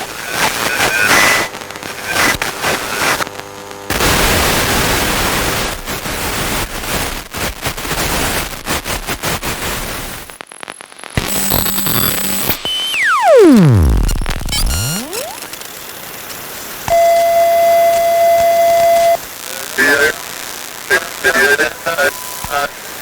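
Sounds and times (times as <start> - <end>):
electronic buzz with hum: 0.0 - 5.2, 11.2 - 15.6
radio static crackling: 0.0 - 6.7, 9.2 - 16.0, 16.9 - 23.0
humming buzz: 11.2 - 15.6.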